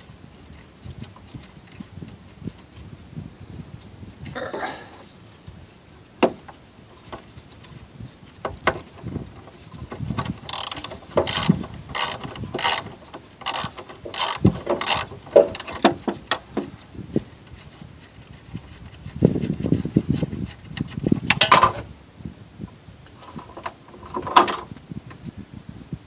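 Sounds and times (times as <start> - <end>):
tool knocks: 6.2 - 6.5.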